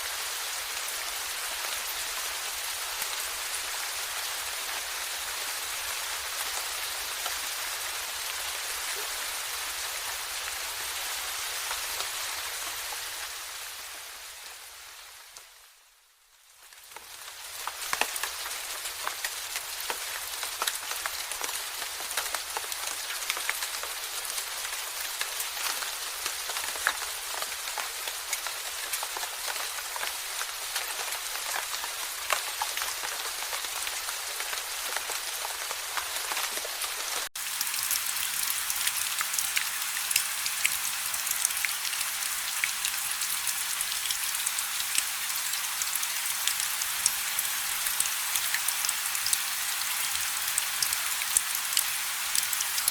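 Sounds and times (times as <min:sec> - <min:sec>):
rain drops pattering: 0:16.6 - 0:35.7, 0:37.4 - 0:52.9.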